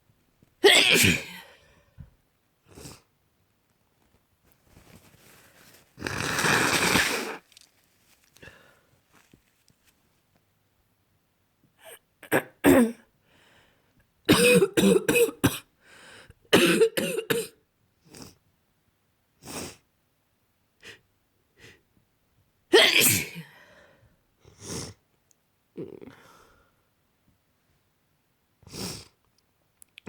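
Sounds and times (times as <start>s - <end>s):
person sneezing: 0.6s - 1.5s, 6.0s - 7.5s, 22.8s - 23.5s.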